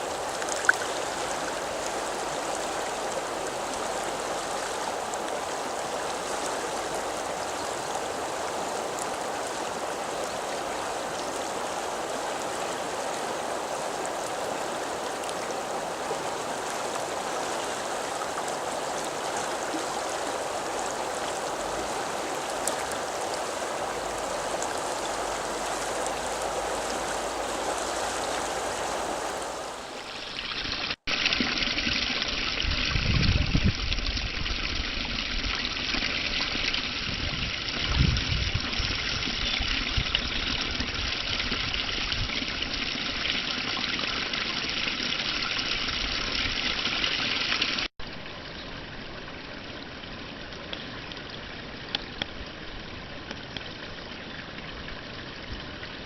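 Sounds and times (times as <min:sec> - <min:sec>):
stream water rushing: 0:00.0 - 0:32.4.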